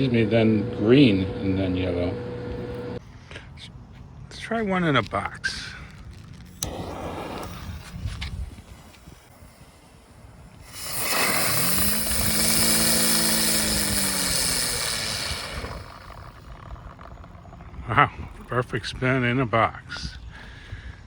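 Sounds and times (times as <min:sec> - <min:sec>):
spinner firework hissing: 0:05.4 - 0:19.0
firework whirring tone: 0:05.4 - 0:19.3.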